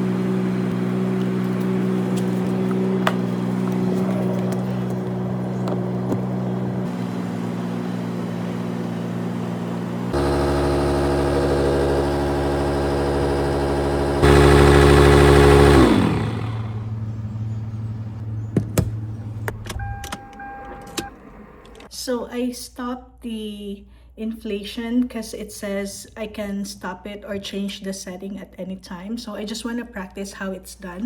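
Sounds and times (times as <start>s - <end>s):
electric inflation pump running: 0.0s - 17.1s.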